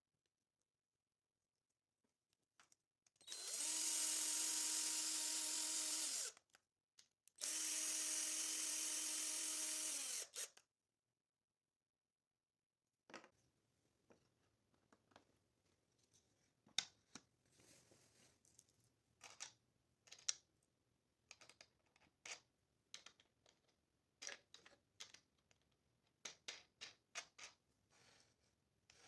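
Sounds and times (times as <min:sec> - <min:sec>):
small objects clicking and tapping: 0:02.3 - 0:02.8, 0:18.5 - 0:20.5, 0:21.3 - 0:27.6.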